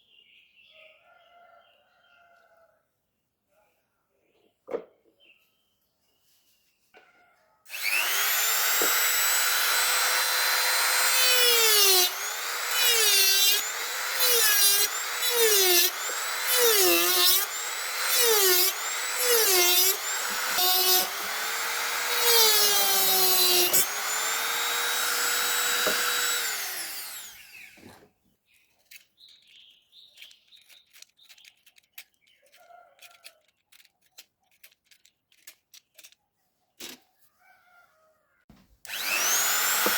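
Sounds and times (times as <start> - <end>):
small electric motor whining: 7.7 - 28.0, 38.9 - 39.9.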